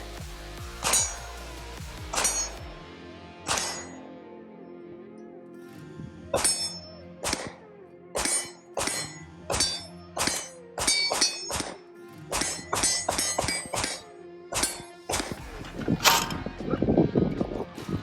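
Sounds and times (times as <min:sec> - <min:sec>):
bullets clanging on steel targets: 0:00.8 - 0:01.4, 0:02.0 - 0:02.6, 0:03.5 - 0:04.0, 0:06.3 - 0:07.6, 0:08.2 - 0:16.9.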